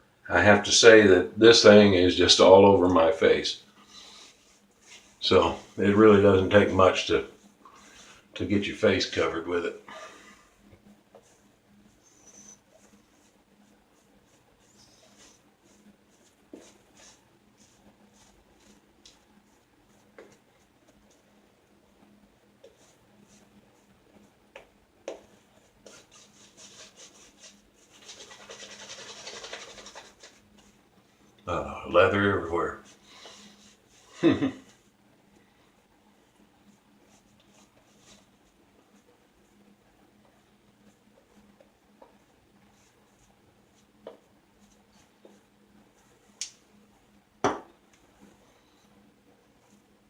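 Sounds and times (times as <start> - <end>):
shaving brush strokes on beard: 25.7 - 30.7
knock: 47.4 - 47.7.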